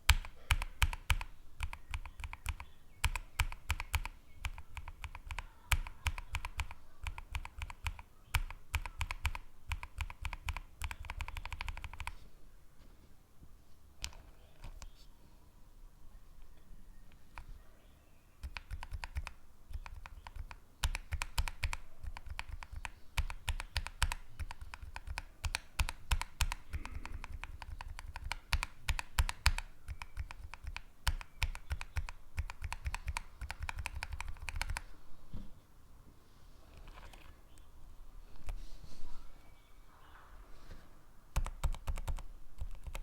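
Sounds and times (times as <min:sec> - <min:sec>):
mechanical keyboard typing: 0:00.0 - 0:12.2, 0:18.4 - 0:34.9, 0:41.4 - 0:43.0.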